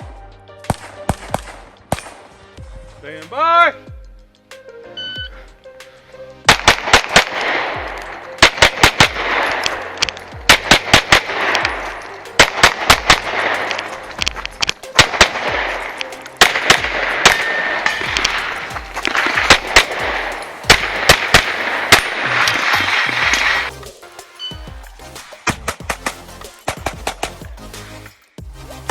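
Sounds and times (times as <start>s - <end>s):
rapid pistol fire: 0.7s - 2.3s, 6.5s - 23.7s, 25.2s - 27.4s.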